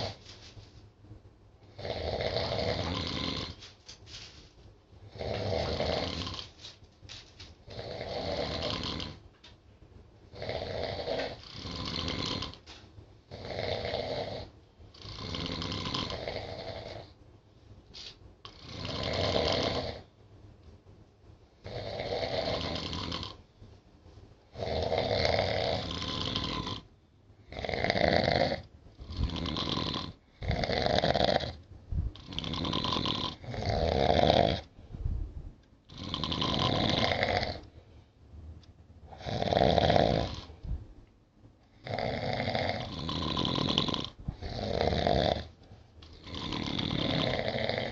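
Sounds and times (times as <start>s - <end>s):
people snoring: 1.7s - 3.6s, 5.1s - 6.5s, 7.7s - 9.2s, 10.4s - 12.6s, 13.3s - 17.1s, 18.5s - 20.0s, 21.6s - 23.4s, 24.5s - 26.9s, 27.5s - 31.6s, 32.2s - 34.7s, 35.9s - 37.6s, 39.1s - 40.6s, 41.8s - 45.5s, 46.1s - 47.9s.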